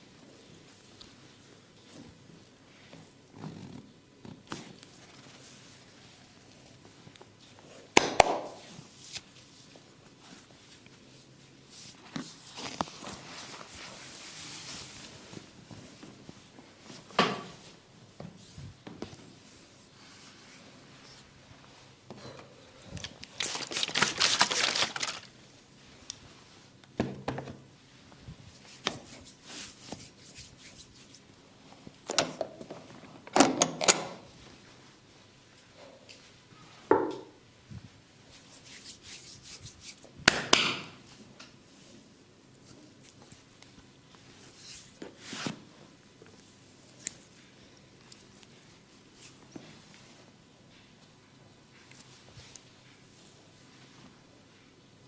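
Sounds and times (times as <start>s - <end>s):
hands rubbing on skin: 28.5s - 31.3s, 38.3s - 40.1s.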